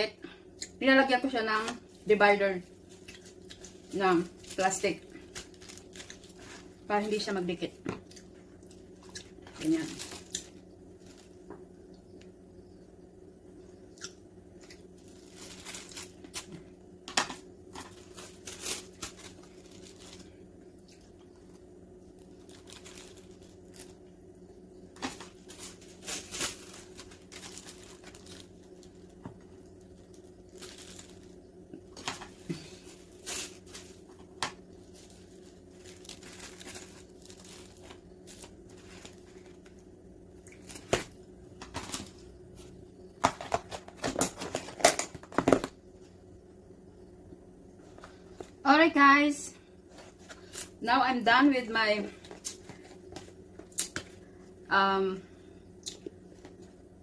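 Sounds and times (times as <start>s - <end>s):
faint steady hum: 0.0s - 57.0s
plastic sheets crinkling: 1.6s - 7.8s, 8.7s - 11.5s, 14.8s - 24.1s, 24.9s - 39.8s, 40.5s - 45.7s.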